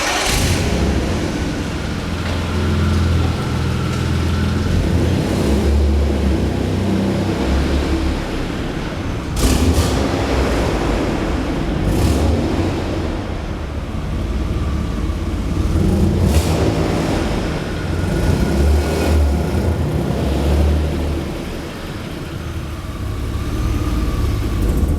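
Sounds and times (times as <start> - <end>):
car engine running: 0.0 - 7.0.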